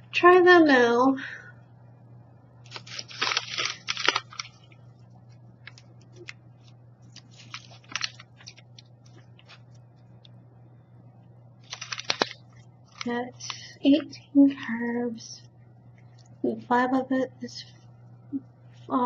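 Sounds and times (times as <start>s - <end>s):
chewing crunchy chickpeas: 2.7s - 4.8s, 7.2s - 9.5s, 11.6s - 13.6s.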